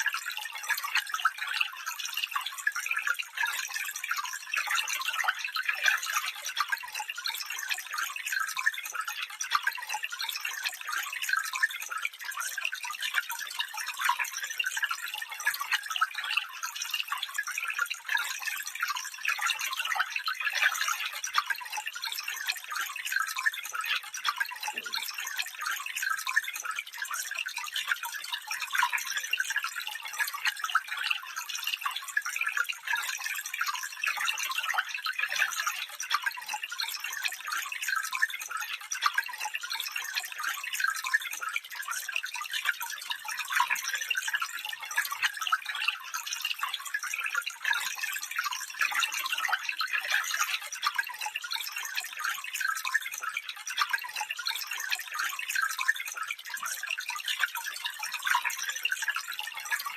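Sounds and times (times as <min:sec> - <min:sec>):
stream babbling over stones: 0:24.6 - 0:25.1.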